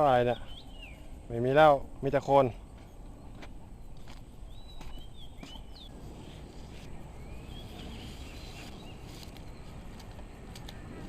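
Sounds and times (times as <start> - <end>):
birds chirping: 0.0 - 10.8
low outdoor rumble: 0.0 - 11.0.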